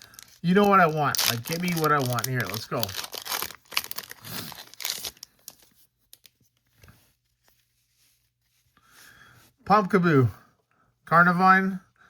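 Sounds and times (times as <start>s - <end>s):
foil pack tearing and crinkling: 0.0s - 5.6s.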